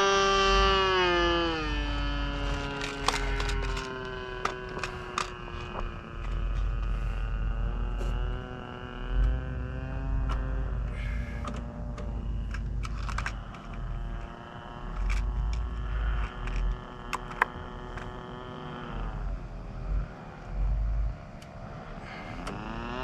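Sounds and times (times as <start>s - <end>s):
low rumbling gusts: 0.0s - 23.0s
model airplane engine and propeller: 0.0s - 23.0s
sharp clicks: 1.5s - 6.9s, 10.2s - 18.4s.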